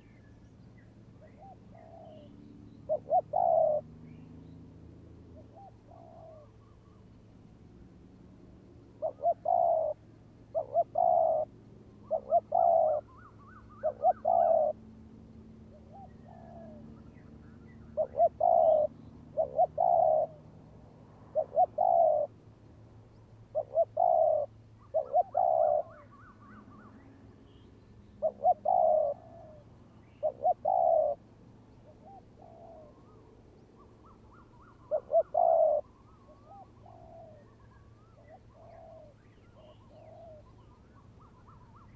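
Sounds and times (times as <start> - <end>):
doves cooing: 1.4 - 4.0, 5.4 - 6.8, 9.0 - 14.8, 15.7 - 16.9, 17.7 - 20.5, 21.3 - 22.3, 23.5 - 27.2, 28.2 - 31.2, 31.8 - 33.4, 34.0 - 41.9.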